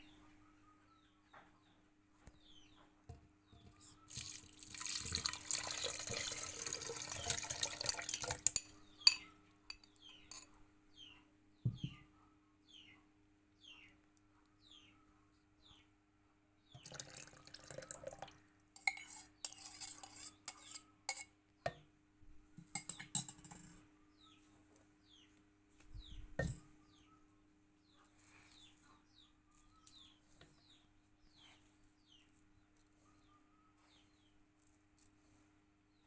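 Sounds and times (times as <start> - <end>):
dishes and cutlery clinking: 7.1 - 10.6, 18.8 - 21.4, 22.6 - 23.8.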